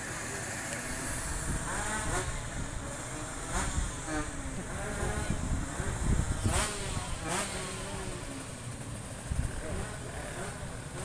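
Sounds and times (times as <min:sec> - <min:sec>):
motorcycle engines revving: 0:00.0 - 0:11.0
onlookers' voices: 0:00.0 - 0:11.0.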